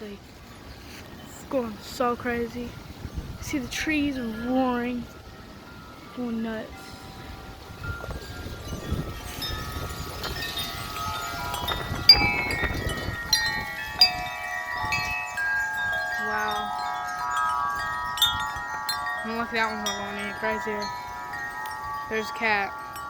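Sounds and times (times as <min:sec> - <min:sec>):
wind chimes ringing: 0:01.2 - 0:23.0
wind rushing: 0:06.8 - 0:23.0.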